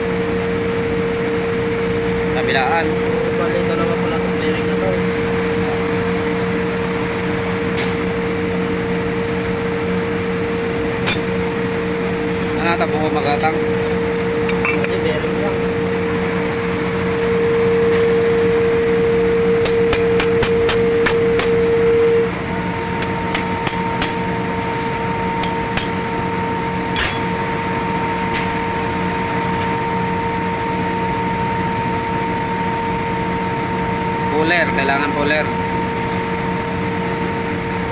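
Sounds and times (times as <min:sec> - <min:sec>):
machine hum: 0:00.0 - 0:34.3
metal tool taps on pulley: 0:25.4 - 0:26.0.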